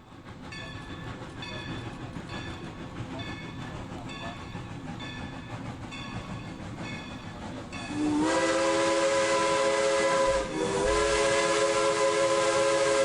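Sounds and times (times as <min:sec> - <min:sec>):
model train rumbling: 0:00.0 - 0:13.0
locomotive bell ringing: 0:00.5 - 0:08.1.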